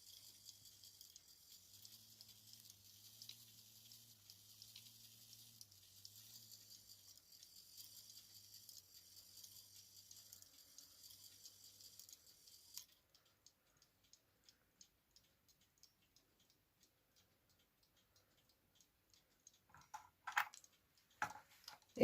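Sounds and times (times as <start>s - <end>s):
faint hiss: 0.0s - 13.0s
clock ticking quickly: 0.0s - 22.0s.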